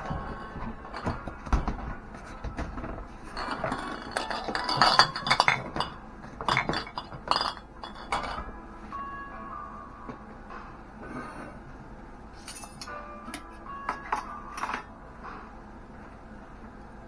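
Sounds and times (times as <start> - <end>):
glass bottles clinking together: 0.0 - 8.6, 12.4 - 15.0.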